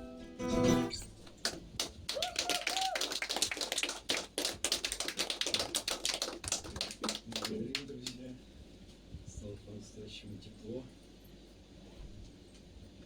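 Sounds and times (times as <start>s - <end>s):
audience applauding: 1.4s - 8.2s.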